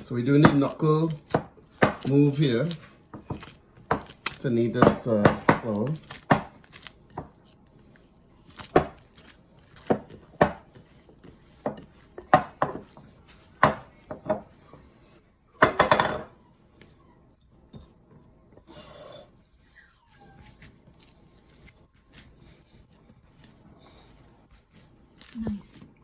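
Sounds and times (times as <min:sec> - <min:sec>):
dough kneading knocks and thumps: 0:00.0 - 0:18.7.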